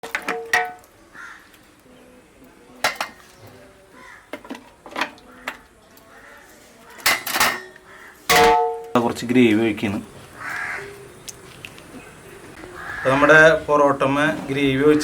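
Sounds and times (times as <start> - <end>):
utensils clinking against dishes: 2.8 - 3.5, 7.0 - 9.1.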